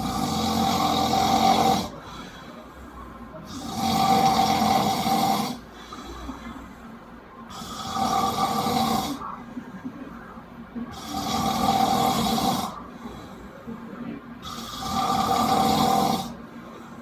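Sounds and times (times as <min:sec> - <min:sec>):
man snoring: 0:00.0 - 0:02.1, 0:03.5 - 0:05.7, 0:07.5 - 0:09.2, 0:10.9 - 0:12.8, 0:14.4 - 0:16.4
quiet breathing: 0:00.0 - 0:17.0.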